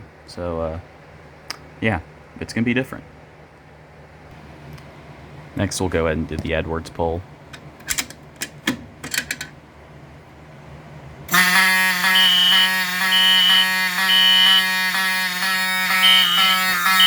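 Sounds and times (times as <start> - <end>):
pull station clicks: 7.5 - 9.6
buzzy alarm horn: 11.3 - 17.0
higher alarm horn beeps: 11.3 - 17.0.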